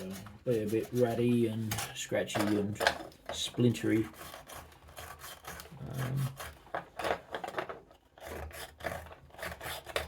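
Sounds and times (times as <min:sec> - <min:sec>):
steel brush scratching metal: 0:00.0 - 0:02.6.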